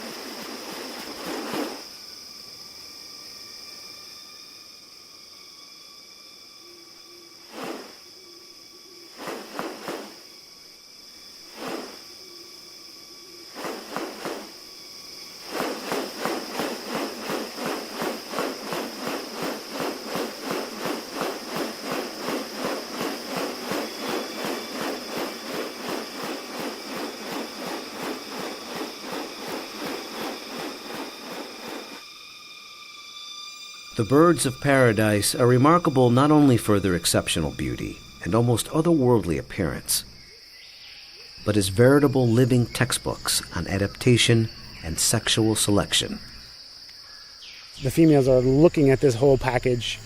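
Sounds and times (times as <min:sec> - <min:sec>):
high-pitched insect drone: 0:00.0 - 0:50.0
fast even pulsing: 0:15.4 - 0:32.0.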